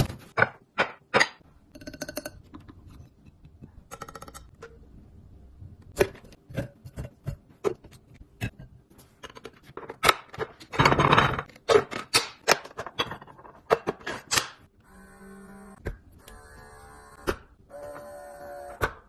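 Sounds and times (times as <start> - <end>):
plastic containers clicking and knocking: 9.2 - 14.6.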